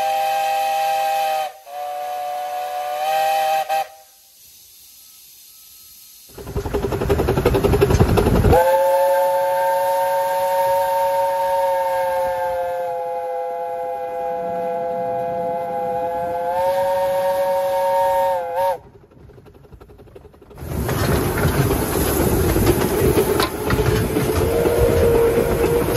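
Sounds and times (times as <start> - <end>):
steam whistle chord: 0.0 - 6.2, 8.5 - 18.8
steam rushing hiss: 0.0 - 25.9.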